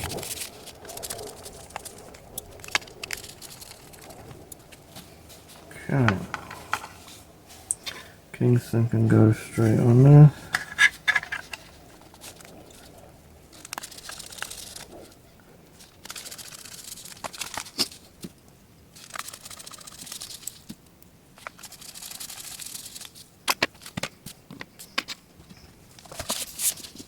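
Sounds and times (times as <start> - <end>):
rustling and scraping: 0.0 - 18.4, 21.4 - 27.0.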